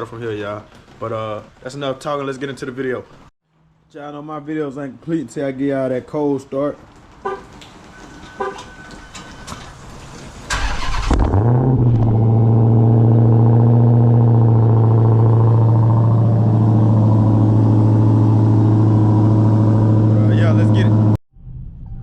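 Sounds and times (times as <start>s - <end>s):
engine starter cranking: 9.1s - 12.2s
car engine revving and idling: 10.5s - 21.2s.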